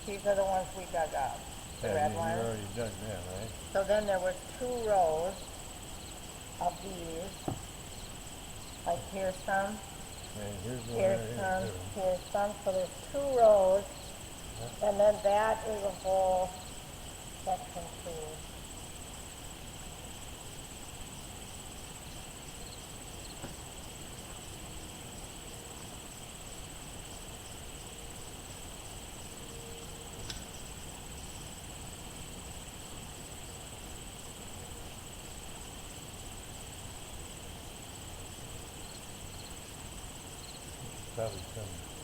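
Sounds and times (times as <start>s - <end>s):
insects chirring: 0.0s - 42.0s
faint click: 30.2s - 30.5s.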